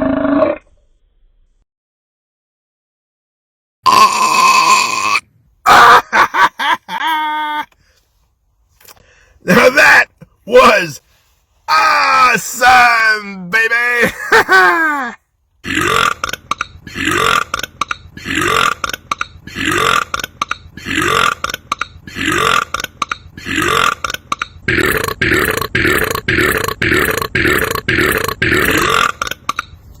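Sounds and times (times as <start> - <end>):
man belching: 3.8 - 6.0, 15.6 - 29.6.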